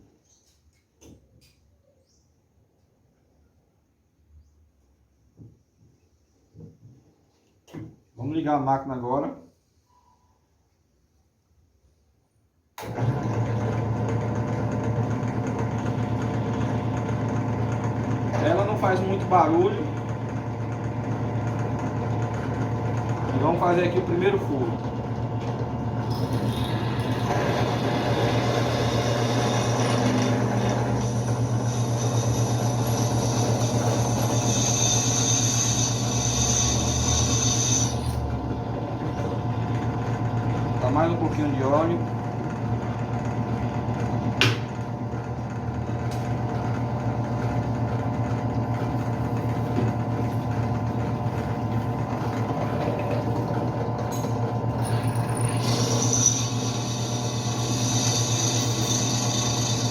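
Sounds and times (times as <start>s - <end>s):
drill press humming: 12.8s - 59.9s
drill bit drilling steel: 26.0s - 38.4s, 49.0s - 59.9s.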